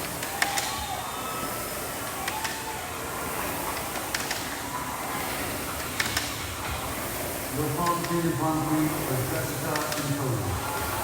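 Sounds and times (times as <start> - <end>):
steady background noise: 0.0 - 11.0.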